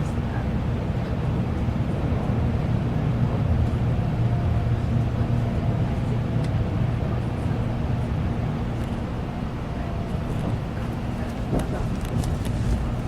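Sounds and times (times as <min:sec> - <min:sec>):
train cabin rumble: 0:00.0 - 0:13.0.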